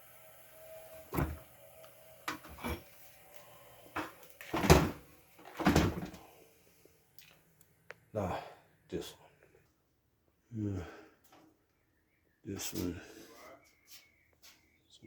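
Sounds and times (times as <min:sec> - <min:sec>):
knocks and clatters of dryer parts: 0:04.0 - 0:06.2.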